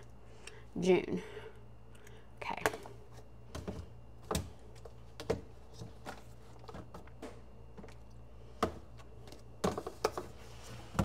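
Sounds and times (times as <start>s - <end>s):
low steady hum: 0.0s - 11.0s
food containers clicking and knocking: 8.6s - 10.4s.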